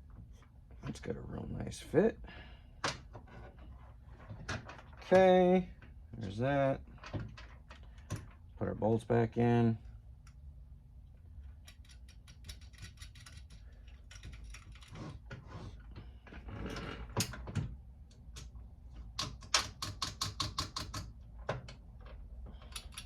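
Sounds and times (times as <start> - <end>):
hand ratchet clicking: 11.6 - 14.8, 22.6 - 23.0.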